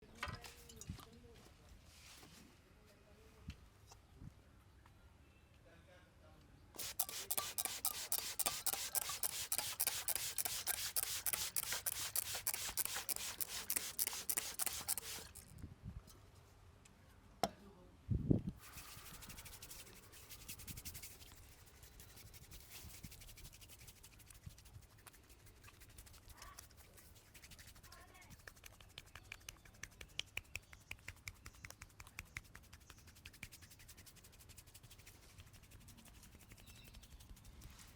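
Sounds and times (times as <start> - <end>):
hands rubbing through hair: 6.8 - 15.5, 18.6 - 37.9.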